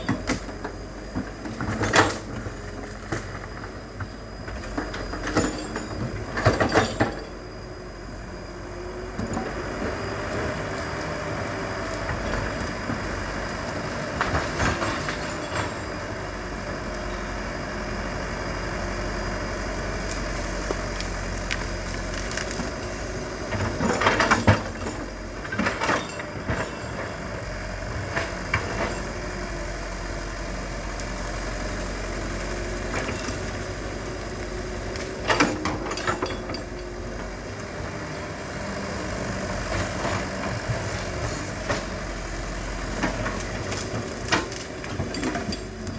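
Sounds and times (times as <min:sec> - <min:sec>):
excavator diesel engine running: 0:00.0 - 0:45.9
wood cracking and crunching: 0:20.1 - 0:23.8.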